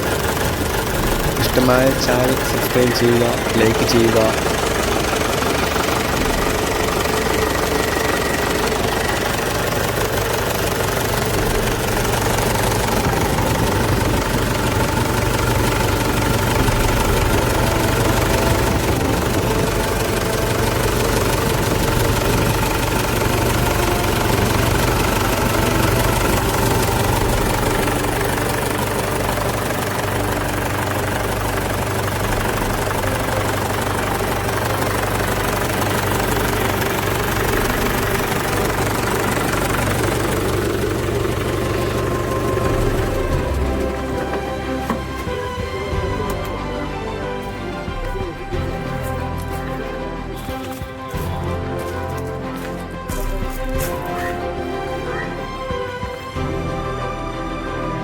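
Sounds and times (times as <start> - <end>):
tractor diesel engine idling: 0.0 - 58.0.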